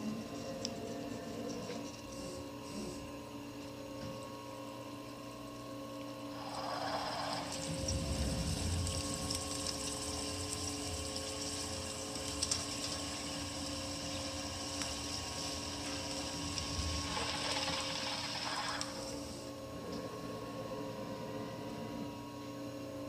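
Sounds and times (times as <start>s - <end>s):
spindle drive electrical whine: 0.0s - 23.0s.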